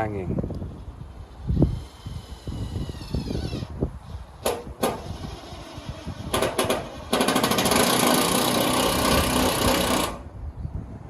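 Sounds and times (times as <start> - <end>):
power drill driving screw into metal: 4.4 - 10.2.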